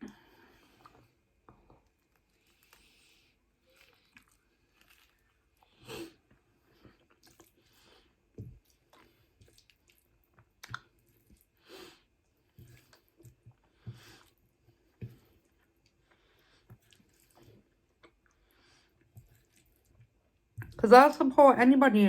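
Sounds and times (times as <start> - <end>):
wet chewing sounds: 0.1 - 20.8.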